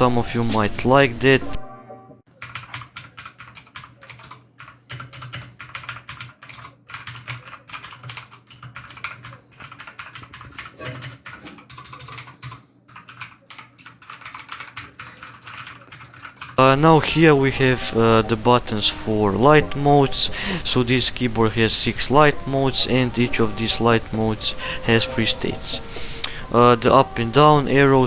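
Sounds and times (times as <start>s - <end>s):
mechanical keyboard typing: 2.4s - 16.6s.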